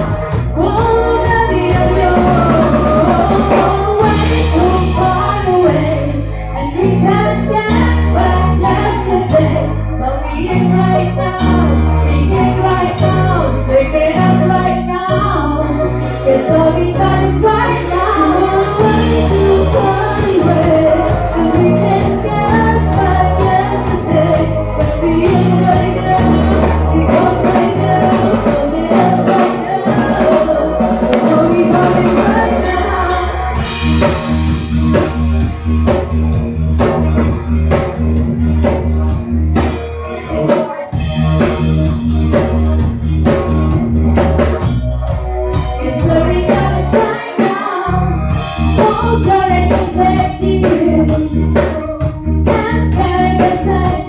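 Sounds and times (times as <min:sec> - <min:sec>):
bass and drum beat: 0:00.0 - 0:54.0
pop song with singer: 0:00.0 - 0:54.0.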